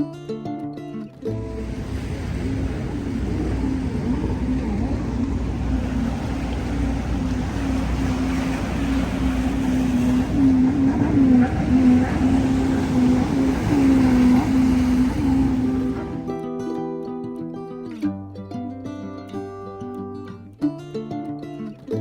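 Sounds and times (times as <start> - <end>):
engine drone: 1.3 - 16.4.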